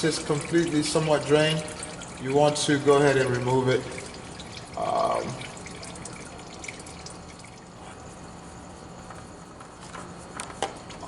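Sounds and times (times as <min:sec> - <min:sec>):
oil trickling into a pan: 0:00.0 - 0:07.8.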